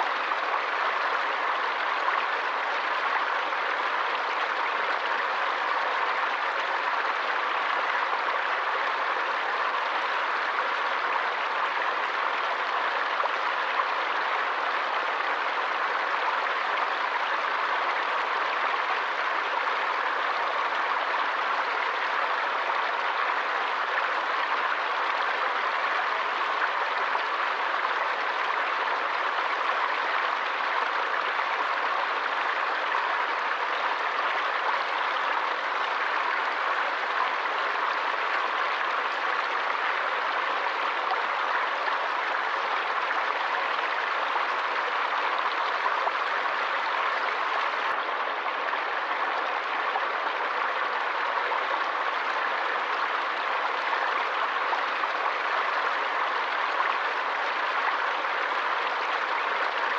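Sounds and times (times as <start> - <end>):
stream water rushing: 0.0 - 59.9.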